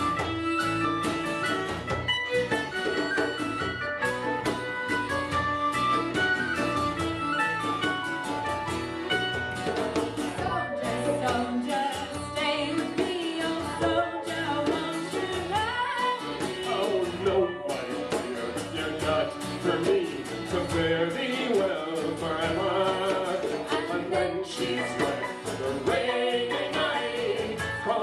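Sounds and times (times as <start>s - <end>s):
folk band playing: 0.0s - 28.0s
voices singing: 10.4s - 28.0s.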